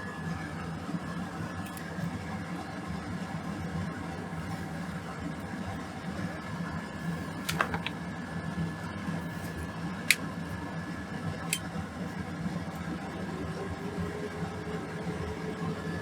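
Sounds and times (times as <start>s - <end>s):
extractor fan humming: 1.6s - 2.1s, 7.0s - 8.1s.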